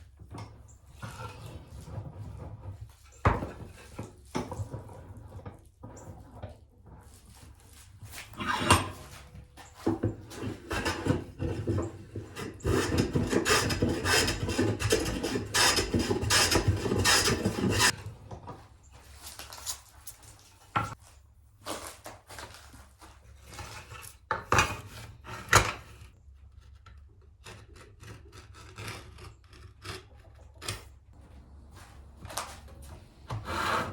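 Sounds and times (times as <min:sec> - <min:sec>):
wooden boards and tools clattering: 0:08.4 - 0:19.8
hand tool rasping on wood: 0:10.3 - 0:18.0, 0:33.3 - 0:33.9.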